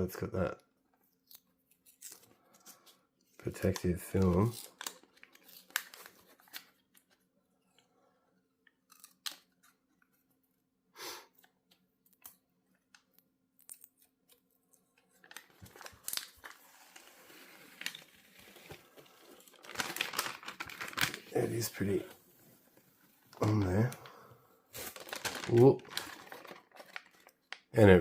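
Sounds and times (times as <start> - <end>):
plastic film crackling peeling off: 3.6 - 7.1, 15.0 - 22.0, 23.3 - 27.7
small clicks and handling noises: 8.6 - 10.3, 25.1 - 27.7.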